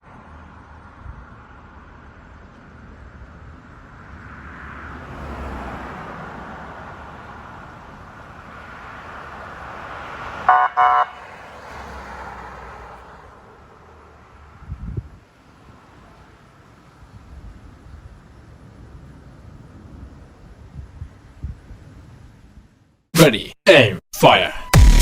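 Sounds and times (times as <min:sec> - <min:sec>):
road traffic passing: 0:00.0 - 0:23.3
car horn honks: 0:10.5 - 0:11.3.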